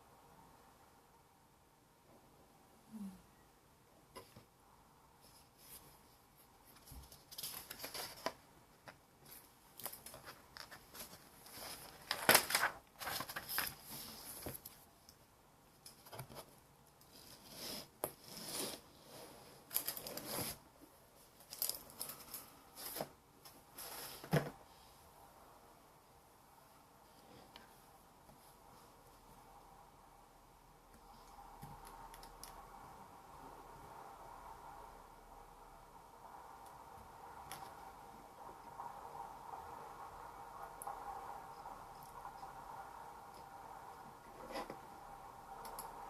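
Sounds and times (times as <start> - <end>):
paper rustling and scraping: 6.6 - 8.5, 9.2 - 14.8, 16.0 - 20.6, 21.4 - 24.5.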